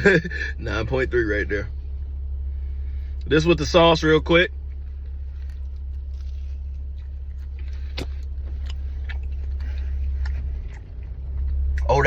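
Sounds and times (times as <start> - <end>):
steady low hum: 0.0 - 12.0
pizza being bitten: 4.8 - 11.0.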